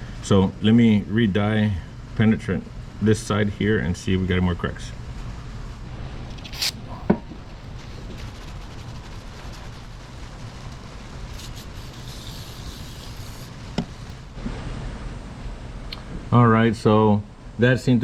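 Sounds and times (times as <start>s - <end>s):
steady low hum: 0.0s - 18.0s
aerosol can spraying: 6.3s - 14.3s.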